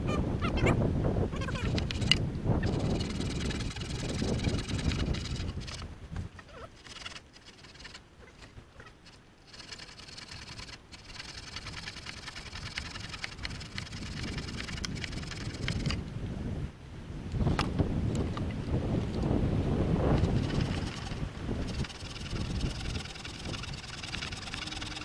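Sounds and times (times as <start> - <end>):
wind buffeting microphone: 0.0 - 25.0
rustling and pattering: 1.4 - 16.0, 20.0 - 25.0.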